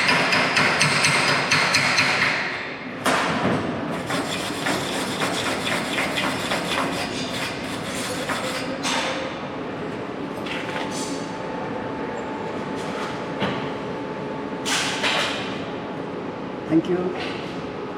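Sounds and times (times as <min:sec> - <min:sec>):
hand tool knocking and scraping steel: 0:00.0 - 0:02.4.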